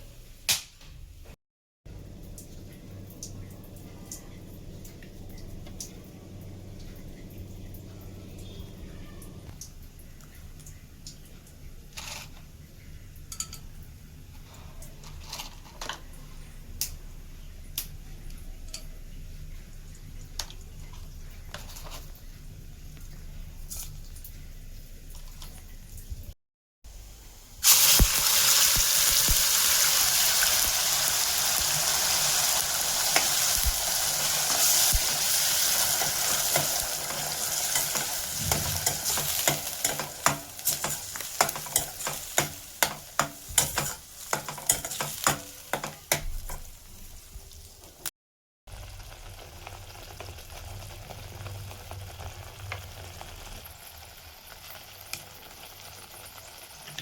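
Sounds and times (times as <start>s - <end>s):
spoon scraping a pan: 12.0s - 12.5s, 21.4s - 22.2s, 35.8s - 46.8s
food sizzling in hot oil: 27.0s - 48.1s, 48.7s - 57.0s.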